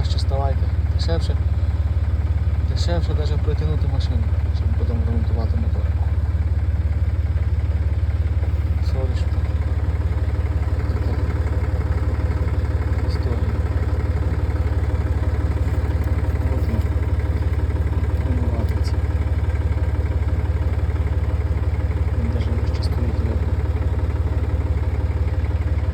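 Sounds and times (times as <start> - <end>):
engine idling: 0.0 - 25.9
faint voices: 2.8 - 6.6, 8.4 - 24.0.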